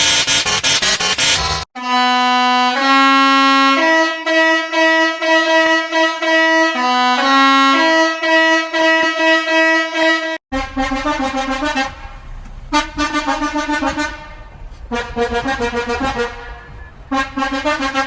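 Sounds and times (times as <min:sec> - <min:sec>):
dense harsh sound: 0:00.0 - 0:01.7
bus horn tune: 0:00.0 - 0:18.0.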